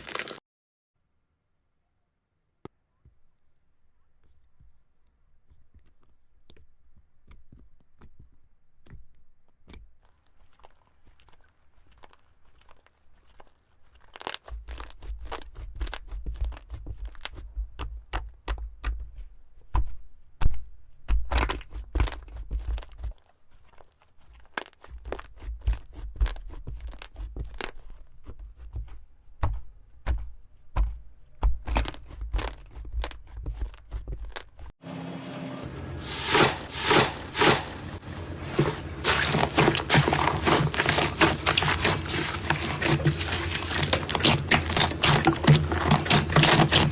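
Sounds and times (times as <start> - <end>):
slime crackling and crunching: 0.0 - 0.4, 10.4 - 17.3, 36.0 - 46.9.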